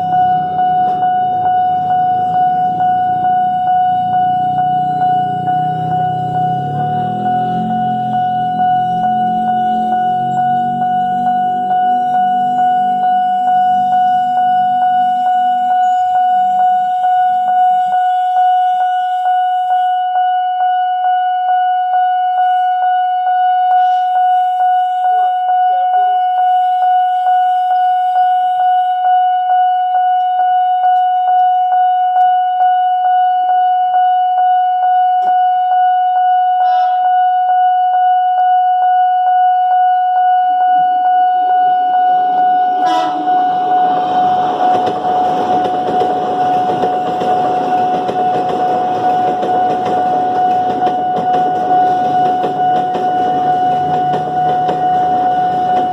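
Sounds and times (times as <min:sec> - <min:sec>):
train rumble: 0:00.0 - 0:15.3, 0:42.2 - 0:55.9
level crossing warning siren: 0:00.0 - 0:55.9.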